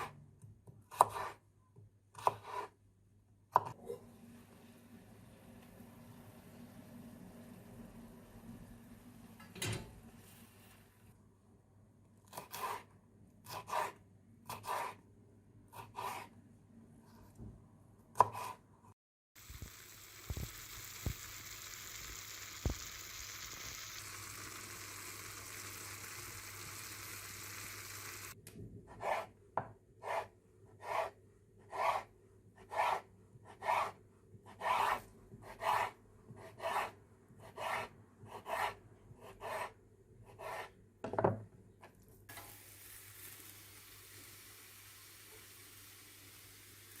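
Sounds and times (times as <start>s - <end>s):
food sizzling in a pan: 19.4s - 28.4s, 42.3s - 47.0s.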